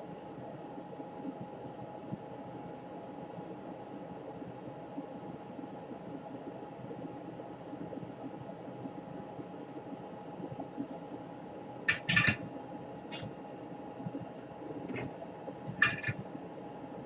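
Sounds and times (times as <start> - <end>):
steady background hum: 0.0 - 17.0
small tools clicking and scraping: 15.7 - 16.2.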